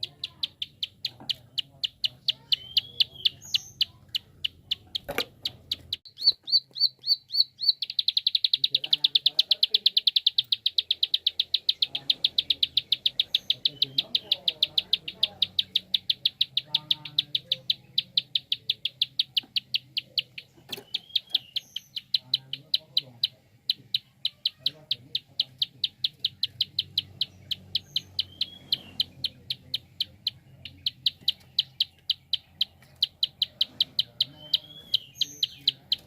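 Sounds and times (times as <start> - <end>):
bird rapid clicking call: 0.0 - 36.0.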